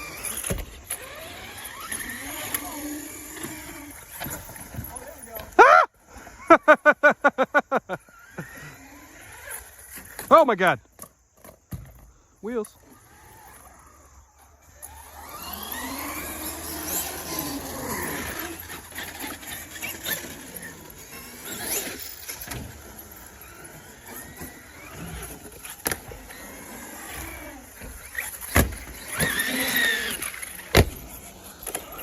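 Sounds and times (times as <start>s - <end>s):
electric toy truck motors whining: 0.0s - 32.0s
trucks landing on cement: 27.0s - 32.0s.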